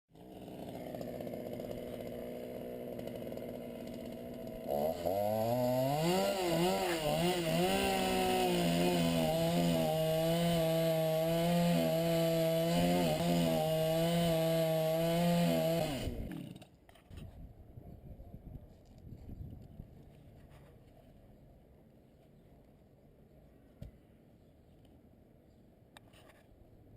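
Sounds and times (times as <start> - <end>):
chainsaw engine revving: 0.1 - 16.7.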